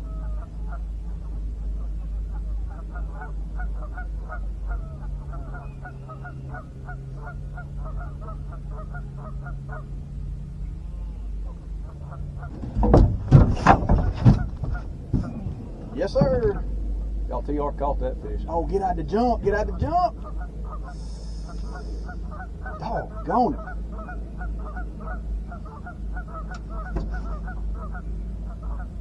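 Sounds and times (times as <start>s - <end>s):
geese honking: 0.0s - 29.0s
steady low motor hum: 0.0s - 29.0s
loud sharp knocks and thumps: 12.5s - 16.8s.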